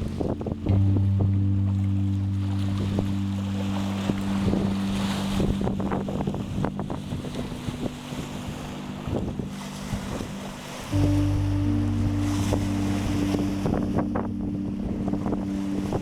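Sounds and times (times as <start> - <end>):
steady low hum: 0.0 - 7.0, 10.9 - 16.0
sea waves lapping at shore: 0.0 - 16.0
wind buffeting microphone: 0.0 - 16.0.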